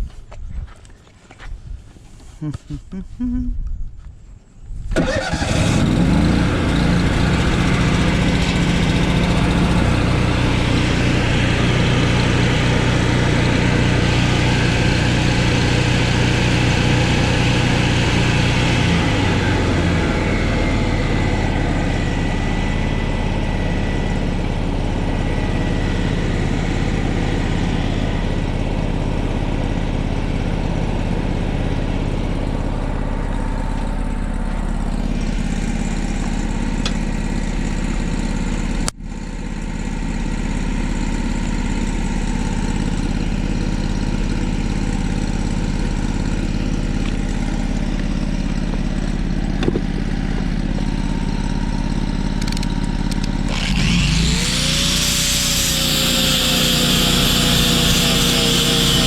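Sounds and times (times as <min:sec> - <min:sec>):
welding machine engine running: 0:05.4 - 0:23.6, 0:50.4 - 0:59.0.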